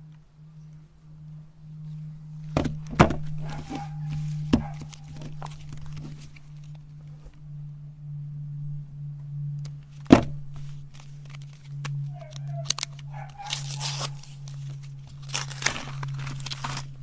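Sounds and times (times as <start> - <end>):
chocolate crunching and grinding: 12.7 - 17.0.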